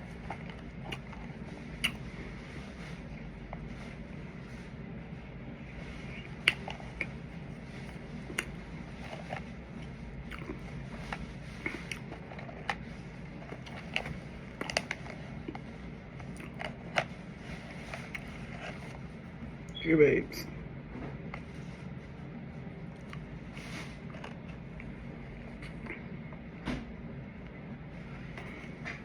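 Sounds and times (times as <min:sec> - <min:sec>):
low background hum: 0:00.0 - 0:29.0
mouth clicks and smacks chewing: 0:00.4 - 0:02.1.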